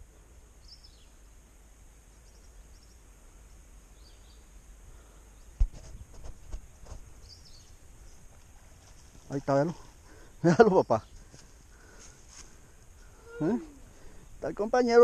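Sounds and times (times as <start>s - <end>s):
high insect drone: 0.0s - 5.6s, 6.4s - 15.0s.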